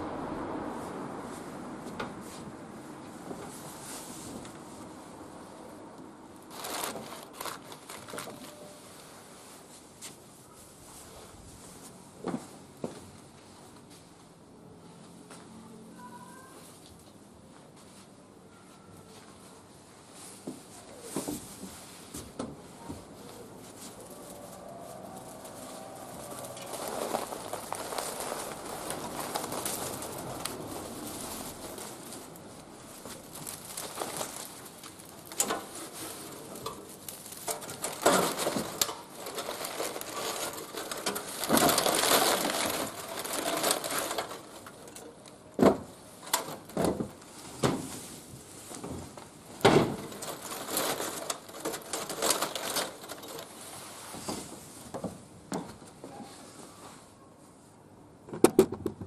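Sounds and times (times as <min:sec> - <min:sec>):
rustling and handling noises: 0:00.7 - 0:59.0
sharp knocks or cracks: 0:58.3 - 0:59.0.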